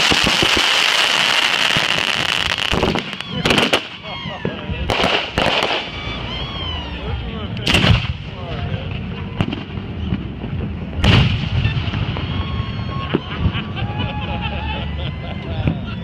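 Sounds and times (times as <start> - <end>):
small firework crack: 0.0 - 6.1
firework explosions: 0.0 - 6.8, 7.6 - 13.8.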